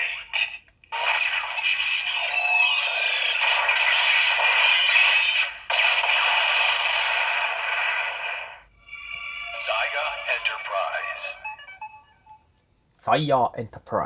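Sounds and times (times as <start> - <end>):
toy speaker sound effects and music: 0.0 - 5.7, 8.0 - 12.4.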